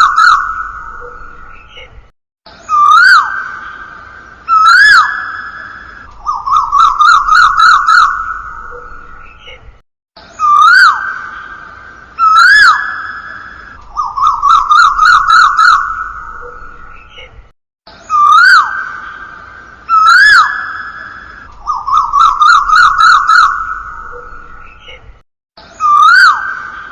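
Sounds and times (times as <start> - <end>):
bird call ringtone: 6.3 - 9.1, 14.0 - 16.8, 21.7 - 24.6.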